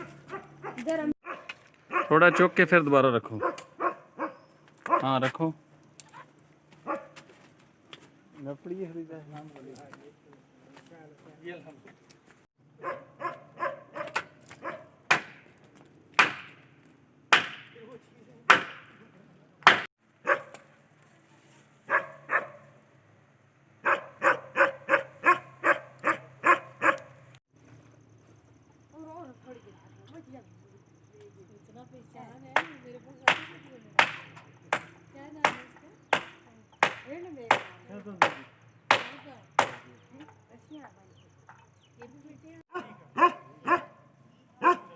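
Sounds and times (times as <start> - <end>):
heavy strikes on wood: 15.1 - 15.5, 16.2 - 16.6, 17.3 - 17.8, 19.6 - 19.9, 32.6 - 39.9.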